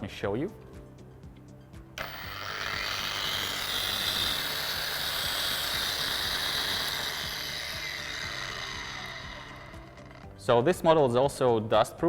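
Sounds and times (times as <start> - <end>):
angle grinder whine: 2.0 - 10.4.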